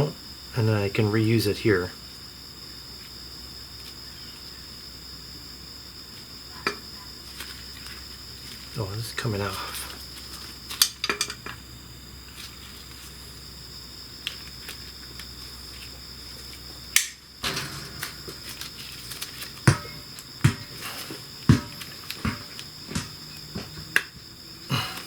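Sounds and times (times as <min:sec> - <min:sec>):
metallic clicks and knocks: 0:17.0 - 0:19.5.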